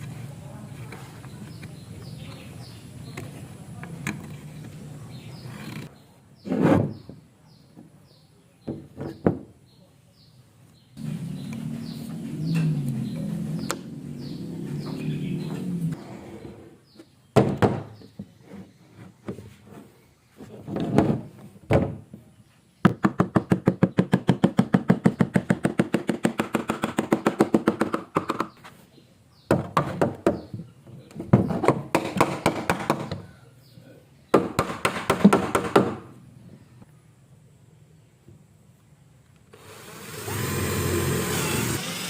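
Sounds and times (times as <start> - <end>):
knocks on wood: 17.4 - 18.3.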